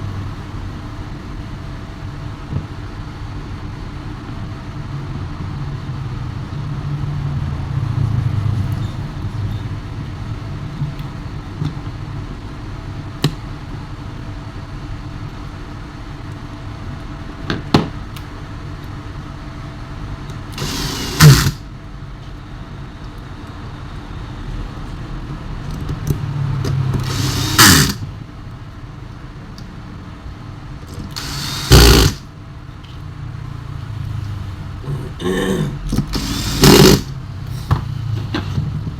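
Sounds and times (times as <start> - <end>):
power drill whirring: 20.5 - 21.6, 27.0 - 28.0, 30.9 - 32.2, 35.9 - 37.2.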